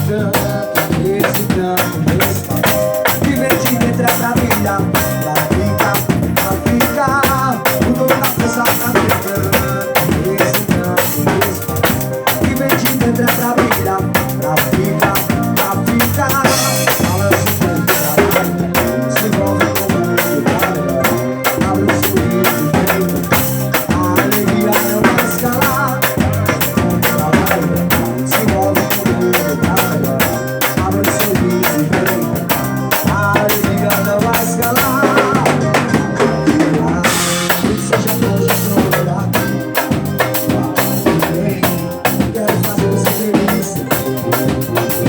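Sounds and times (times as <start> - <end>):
fast drum and percussion beat: 0.0 - 45.0
loud band music: 0.0 - 45.0.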